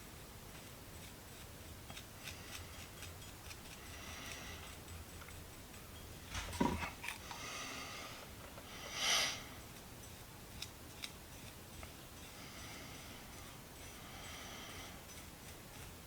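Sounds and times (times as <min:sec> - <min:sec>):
knock on workbench: 0:06.4 - 0:06.9.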